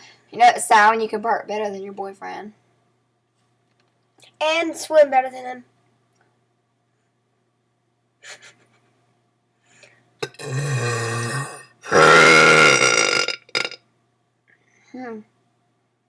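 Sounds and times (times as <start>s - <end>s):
person belching: 10.2s - 13.8s.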